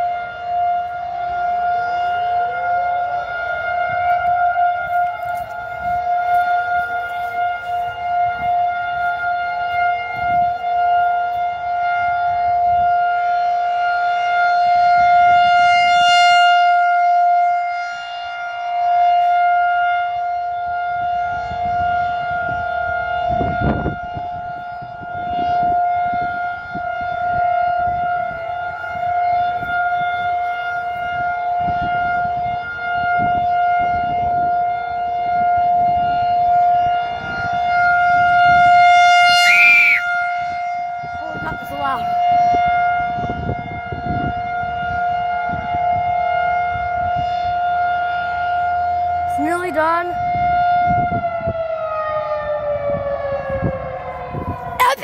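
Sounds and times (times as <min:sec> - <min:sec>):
outdoor warning siren steady tone: 0:00.0 - 0:55.0.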